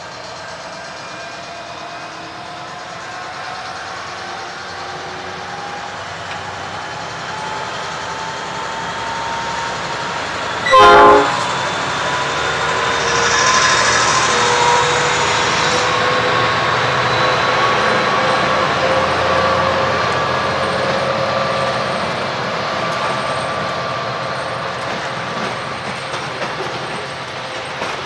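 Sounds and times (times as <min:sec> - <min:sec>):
train rumbling past: 0:00.1 - 0:28.0
locomotive horn blast: 0:10.6 - 0:11.9.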